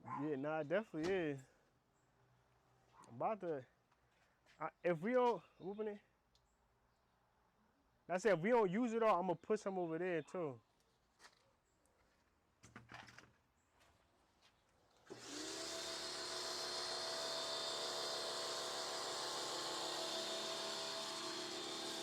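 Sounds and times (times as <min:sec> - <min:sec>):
pressure washer motor whine: 0:15.1 - 0:22.0.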